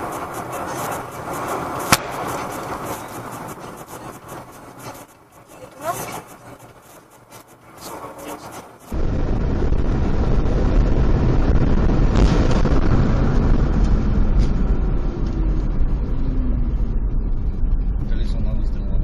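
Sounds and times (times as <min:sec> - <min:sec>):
vehicle driving at speed: 0:00.0 - 0:19.0
sharp crack: 0:00.7 - 0:03.6, 0:11.4 - 0:15.4.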